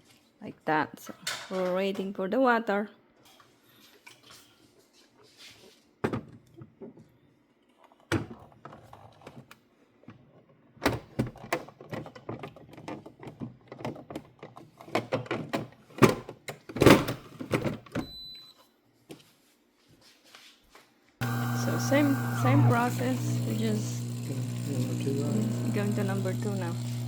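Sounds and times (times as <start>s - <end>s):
plastic parts clicking and clattering: 11.2s - 17.8s.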